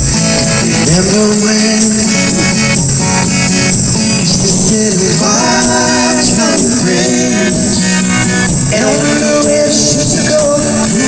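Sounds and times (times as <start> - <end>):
high rattling rhythm: 0.0 - 11.0
live band playing pop song: 0.0 - 11.0.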